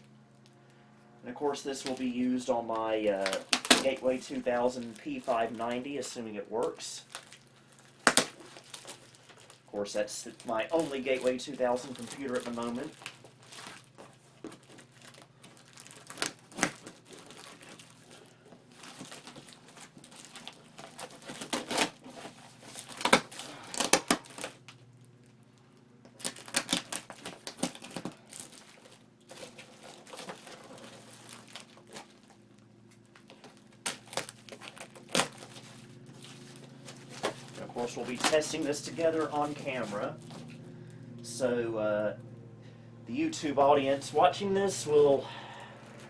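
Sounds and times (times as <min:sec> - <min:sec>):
cardboard rustling: 0:01.7 - 0:25.4, 0:26.0 - 0:40.6
packing tape pulled and torn: 0:02.7 - 0:05.8, 0:06.6 - 0:09.7, 0:10.3 - 0:25.4, 0:26.0 - 0:40.6.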